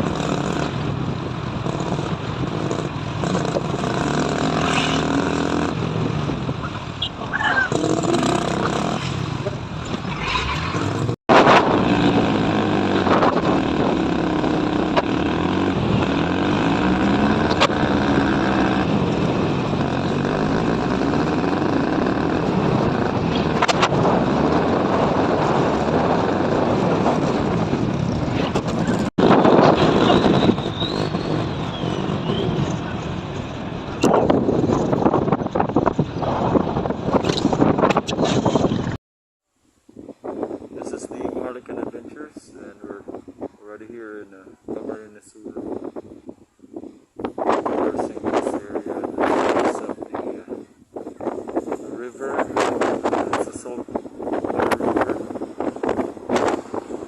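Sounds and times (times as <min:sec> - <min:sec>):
car engine: 0:00.0 - 0:39.0
road noise: 0:00.0 - 0:57.0.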